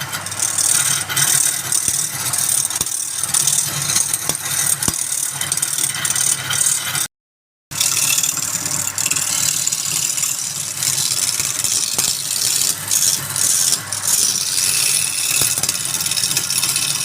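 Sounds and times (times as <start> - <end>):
wood lathe motor hum: 0.0 - 7.1, 7.7 - 17.0.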